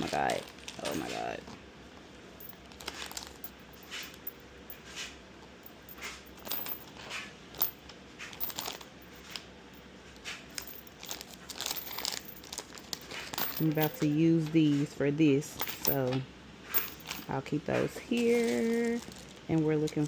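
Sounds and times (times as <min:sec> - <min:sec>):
packaging rustling and crinkling: 0:00.1 - 0:01.4, 0:02.6 - 0:04.1, 0:10.9 - 0:13.6, 0:18.1 - 0:19.5.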